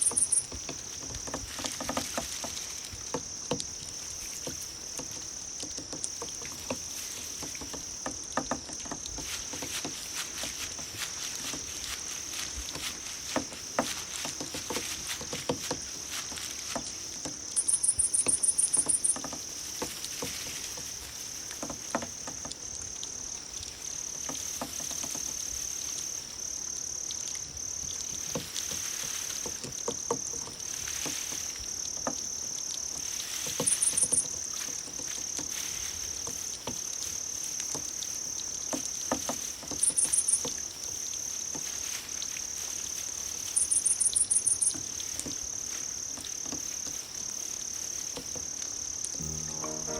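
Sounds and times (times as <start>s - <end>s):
fast pulsing insect call: 0.0s - 19.9s, 33.1s - 49.9s
cricket-like insect trill: 0.0s - 49.9s.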